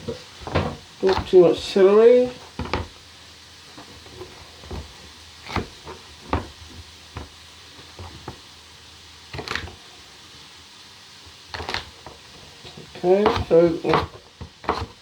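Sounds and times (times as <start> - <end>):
vegetables sizzling in oil: 0.0 - 15.0
knife chopping on cutting board: 0.5 - 1.4, 4.7 - 6.6, 13.2 - 15.0.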